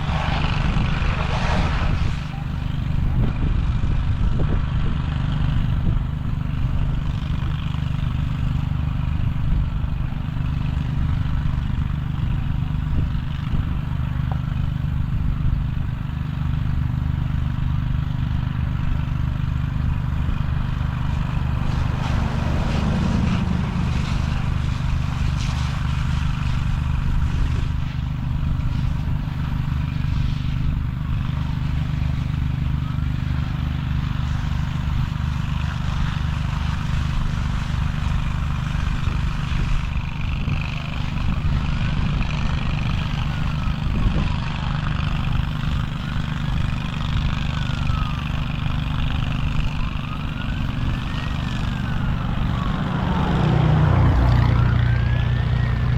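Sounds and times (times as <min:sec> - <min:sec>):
vehicle engine running: 0:00.0 - 0:55.9
siren wailing: 0:45.8 - 0:55.9.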